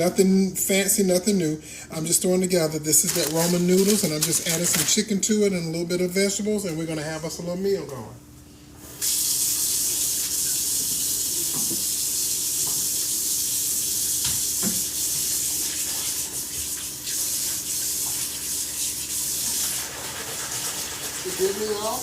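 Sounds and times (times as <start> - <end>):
faucet running into sink: 9.0 - 22.0.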